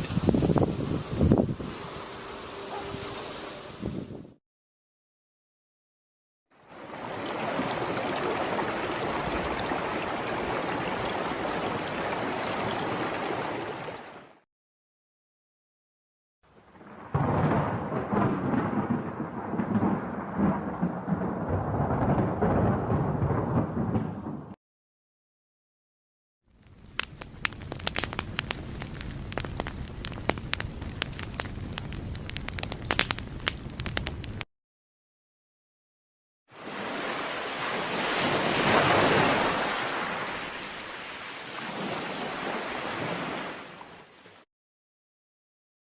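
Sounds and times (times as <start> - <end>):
running water flowing: 6.6 - 14.4
fire crackling and popping: 26.5 - 34.5.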